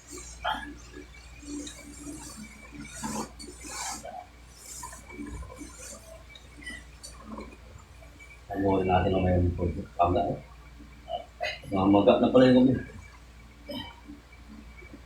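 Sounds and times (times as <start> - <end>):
hissing breaths: 0.0 - 8.5.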